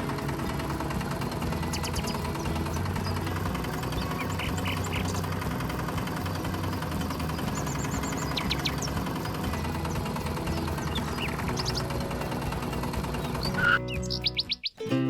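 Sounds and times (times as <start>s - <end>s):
engine idling: 0.0s - 14.6s
bird chirps: 1.6s - 5.4s, 6.9s - 12.3s, 13.1s - 14.8s.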